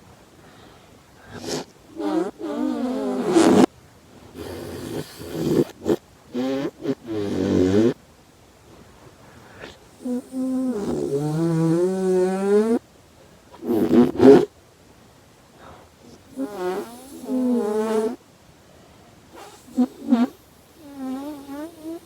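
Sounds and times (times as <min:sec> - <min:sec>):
harsh snort: 0:01.2 - 0:03.7, 0:04.4 - 0:08.0, 0:09.4 - 0:12.8, 0:13.5 - 0:14.5, 0:16.0 - 0:18.2, 0:19.3 - 0:22.0
snoring-like vocal tones: 0:01.3 - 0:03.7, 0:04.4 - 0:08.0, 0:09.5 - 0:12.8, 0:13.6 - 0:14.5, 0:16.1 - 0:18.2, 0:19.4 - 0:22.0.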